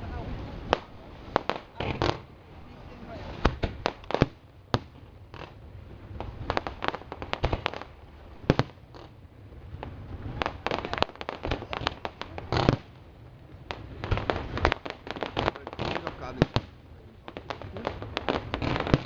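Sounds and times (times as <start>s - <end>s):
fireworks cracking and banging: 0.0s - 19.0s.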